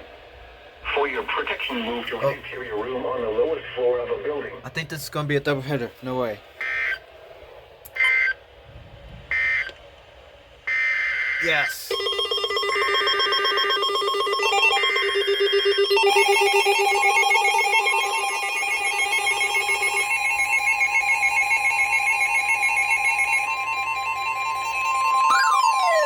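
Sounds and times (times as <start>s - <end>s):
steady warning tone: 0.8s - 7.2s, 7.9s - 8.5s, 9.3s - 9.8s, 10.6s - 26.0s
pulsing alarm tone: 6.6s - 7.0s, 7.9s - 8.4s, 9.3s - 9.7s, 10.7s - 26.0s
alert data bursts: 10.7s - 26.0s
pulsing multi-tone alert: 11.9s - 26.0s.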